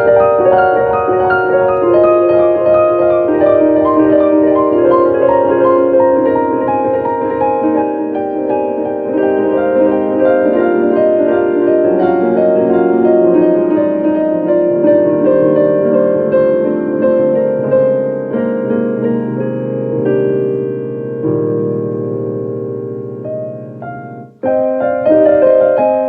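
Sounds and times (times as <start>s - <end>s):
solo piano melody: 0.0s - 26.0s.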